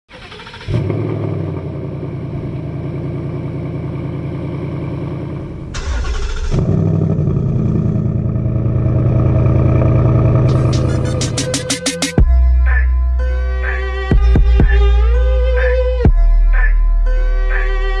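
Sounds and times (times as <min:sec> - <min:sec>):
car engine starting and running: 0:00.1 - 0:12.4.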